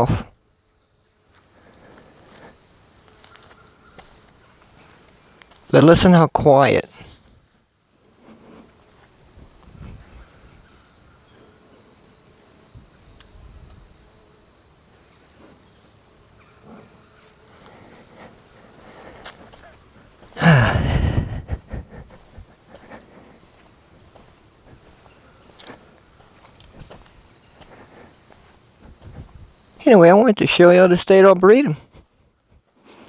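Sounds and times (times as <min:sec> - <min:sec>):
insects trilling: 0:00.0 - 0:33.0
loud human vocal sound: 0:20.4 - 0:21.6.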